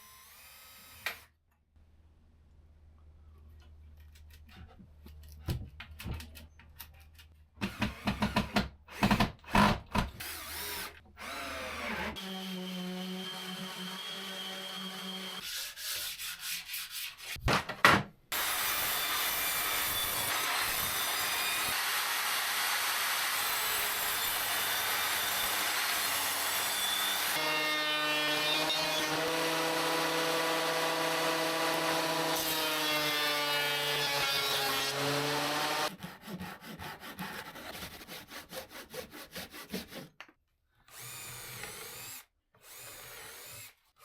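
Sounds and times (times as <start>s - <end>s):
power tool cutting wood: 7.6s - 15.4s, 18.3s - 35.9s.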